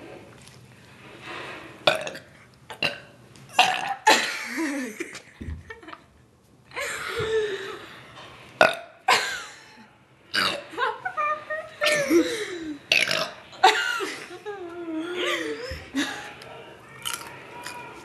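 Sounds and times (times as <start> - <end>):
girls burping: 11.8 - 14.2.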